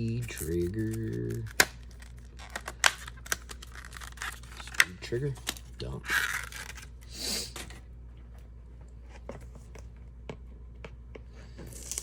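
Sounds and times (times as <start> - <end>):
low steady hum: 0.0 - 12.0
packaging rustle: 0.1 - 6.9.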